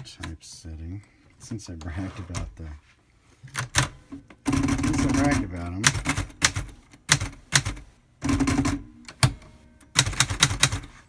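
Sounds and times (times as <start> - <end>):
typewriter keys clacking: 4.6 - 10.9.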